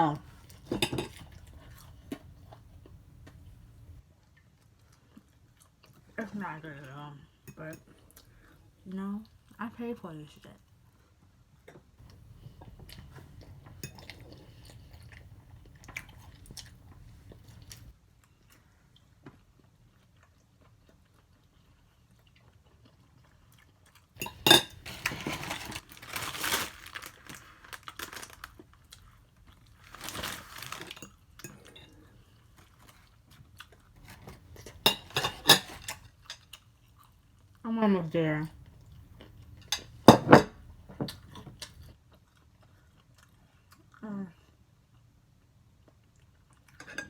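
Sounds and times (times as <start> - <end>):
chewing: 0.3 - 6.2, 11.7 - 25.8, 40.7 - 45.2, 45.8 - 47.0
utensils scraping and clinking dish: 0.5 - 2.4, 12.0 - 14.8, 24.2 - 25.8, 34.0 - 36.4, 38.6 - 41.8.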